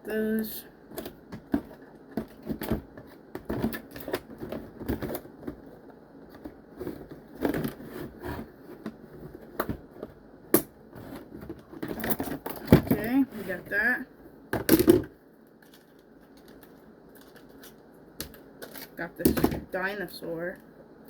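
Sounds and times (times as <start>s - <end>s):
plastic packaging crinkling: 15.5s - 19.0s.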